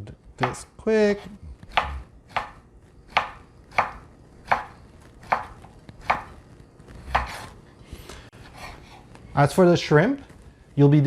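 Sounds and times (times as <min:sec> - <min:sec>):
knife slicing sausage: 0:01.2 - 0:06.4, 0:07.0 - 0:07.6.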